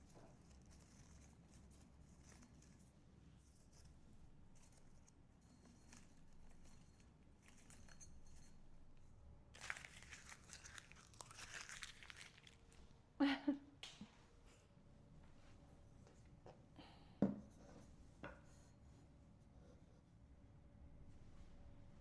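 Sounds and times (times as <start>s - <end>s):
crinkling rustle of items handled: 0.0s - 8.2s, 9.5s - 13.0s
faint low room hum: 0.0s - 22.0s.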